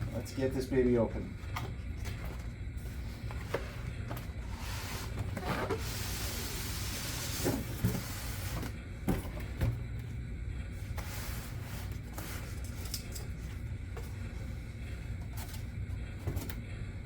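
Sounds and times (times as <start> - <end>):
steady low hum: 0.0 - 17.0
cardboard scraping and sliding: 3.3 - 8.8.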